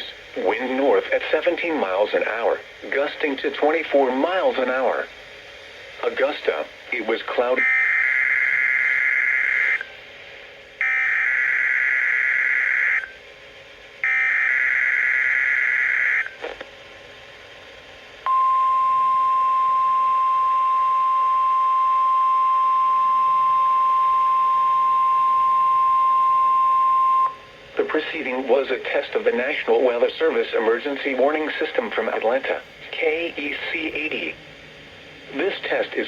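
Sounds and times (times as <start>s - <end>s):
steady warning alarm tone: 7.4s - 9.8s, 10.8s - 13.2s, 14.0s - 16.4s, 18.3s - 27.5s.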